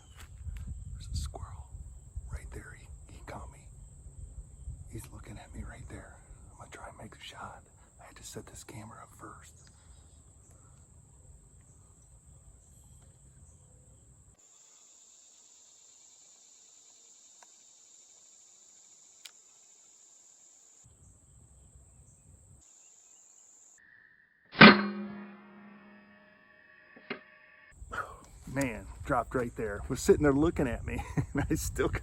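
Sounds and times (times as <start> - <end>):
high insect drone: 0.1 - 24.3
air rifle shot: 24.6 - 26.0.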